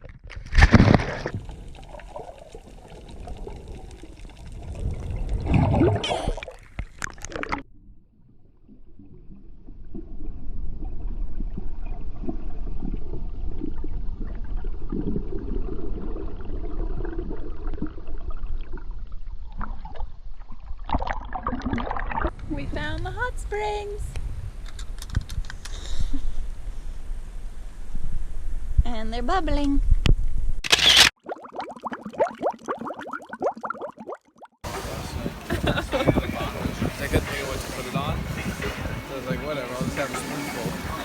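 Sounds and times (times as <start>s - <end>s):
water gurgling and splashing: 0.0s - 7.7s, 8.3s - 22.4s, 30.7s - 41.0s.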